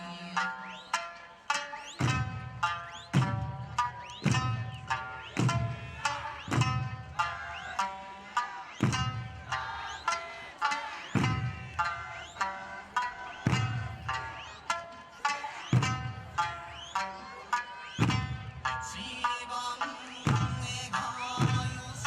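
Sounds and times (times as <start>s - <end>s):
steady low drum beat: 2.0s - 14.7s, 15.6s - 16.8s, 18.0s - 19.3s, 20.0s - 22.0s.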